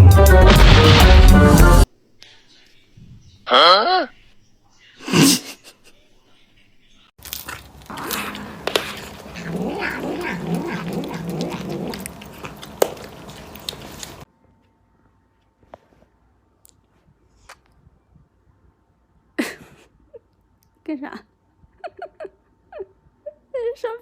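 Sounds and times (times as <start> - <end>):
cat yowling: 7.9 - 14.0.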